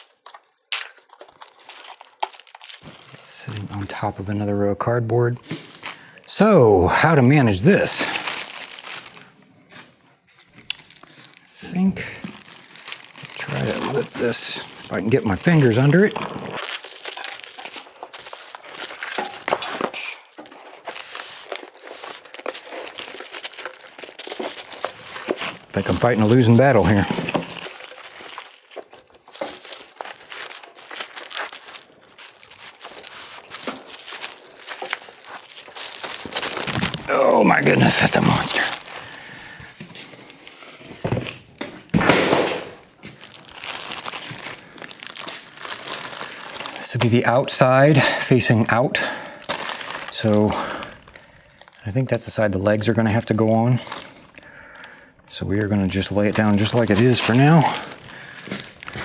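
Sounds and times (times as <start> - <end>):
cardboard crinkling and rustling: 0.0 - 51.8, 52.8 - 54.4, 55.6 - 59.0
cardboard rustling and scraping: 12.4 - 37.1.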